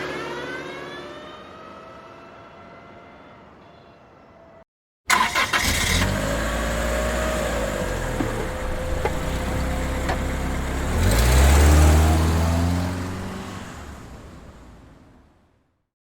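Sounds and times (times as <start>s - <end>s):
car engine idling and revving: 5.1s - 15.4s.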